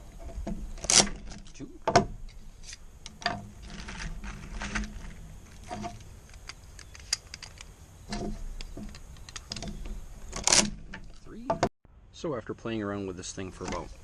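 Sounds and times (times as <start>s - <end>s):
magazine loader clicking and rattling: 5.6s - 7.8s, 8.5s - 9.8s.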